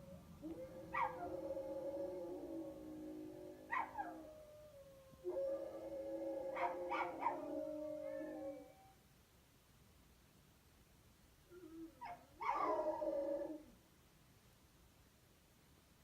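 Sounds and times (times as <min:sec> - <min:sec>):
dogs howling: 0:00.4 - 0:08.9, 0:12.4 - 0:13.7.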